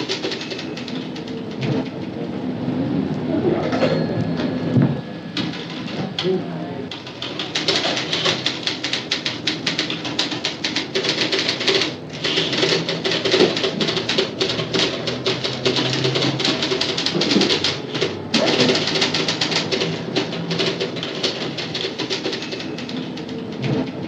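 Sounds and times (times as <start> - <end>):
typewriters clattering: 0.0 - 2.1, 6.9 - 24.0
people talking: 2.8 - 4.6, 5.9 - 6.9, 18.3 - 19.0.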